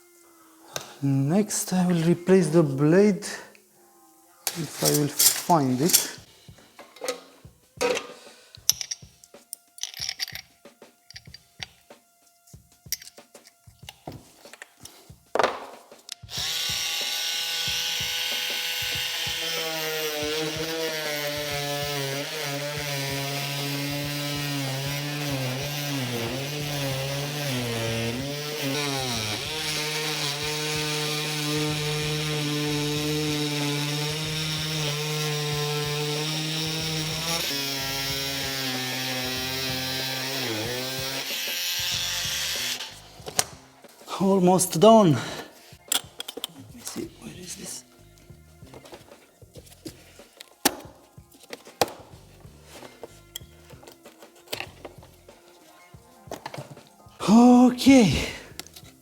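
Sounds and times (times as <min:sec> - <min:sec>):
electric power saw cutting: 0:04.4 - 0:06.3, 0:16.1 - 0:43.5.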